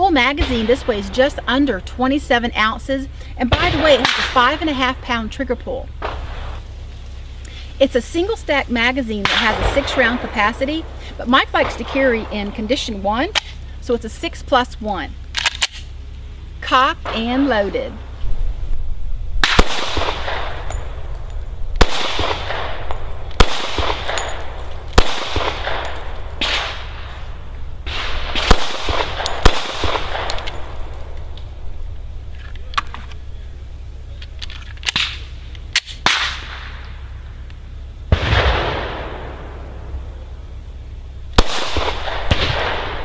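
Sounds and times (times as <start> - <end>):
pistol shots echoing: 19.4 - 21.1, 21.8 - 31.2, 41.4 - 43.0.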